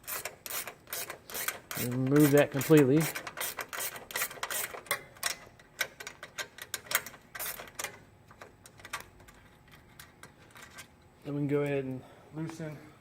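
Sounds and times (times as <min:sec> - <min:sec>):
wrench clicking on bolt: 0:00.0 - 0:08.0.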